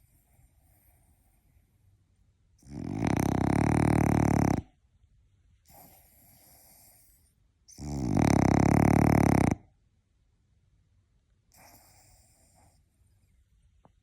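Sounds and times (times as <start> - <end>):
quiet breath: 0.0 - 2.1, 5.6 - 7.6, 11.5 - 14.0
dog snoring: 2.6 - 4.7, 5.7 - 9.7, 11.5 - 12.8.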